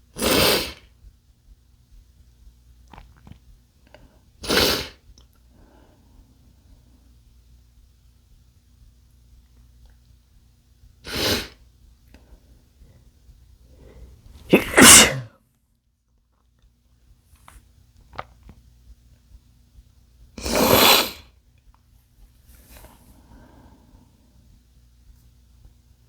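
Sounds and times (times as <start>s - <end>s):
man sneezing: 14.4s - 15.3s, 20.4s - 21.2s.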